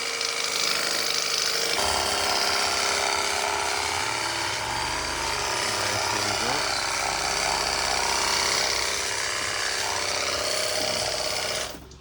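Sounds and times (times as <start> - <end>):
pressure washer motor humming: 0.0 - 12.0.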